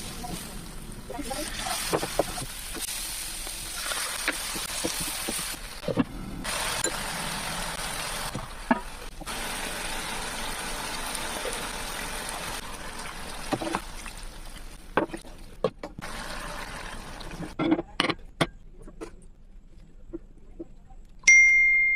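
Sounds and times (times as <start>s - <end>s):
food sizzling in a pan: 0.0s - 14.8s, 16.0s - 17.6s.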